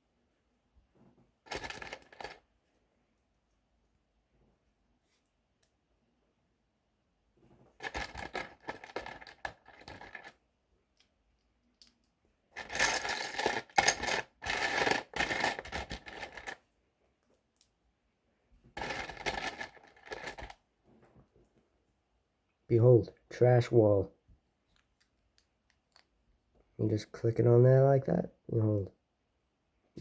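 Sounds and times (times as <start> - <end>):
plastic bricks clattering: 1.5 - 2.4, 7.8 - 10.4, 12.6 - 16.6, 18.8 - 20.6.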